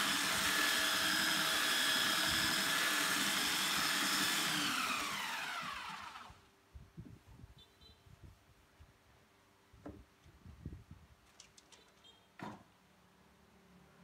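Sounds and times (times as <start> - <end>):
electric sander whining: 0.0 - 6.4.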